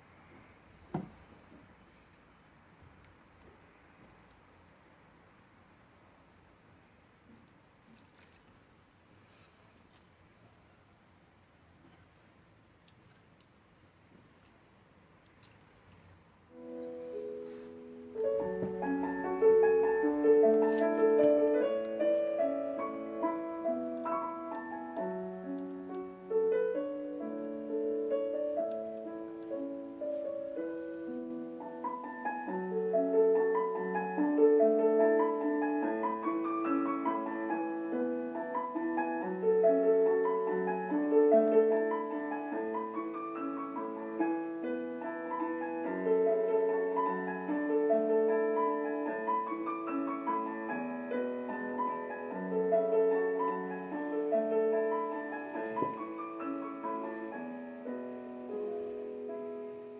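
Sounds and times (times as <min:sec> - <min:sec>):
solo piano melody: 0:15.8 - 0:59.9.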